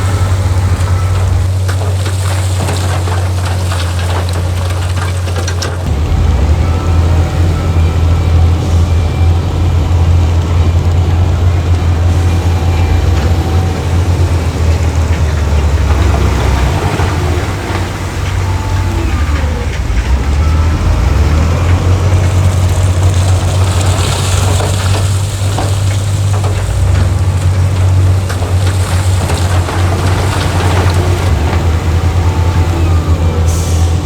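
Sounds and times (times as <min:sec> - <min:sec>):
heavy diesel engine running: 0:00.0 - 0:34.0.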